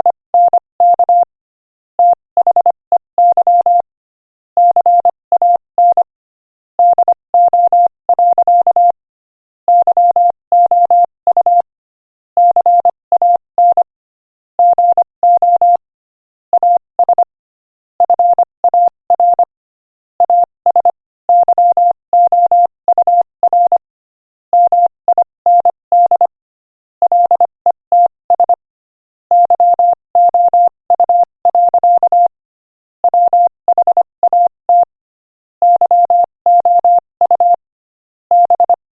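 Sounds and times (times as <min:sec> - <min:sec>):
morse code tone: 0:35.6 - 0:37.6, 0:38.3 - 0:38.8.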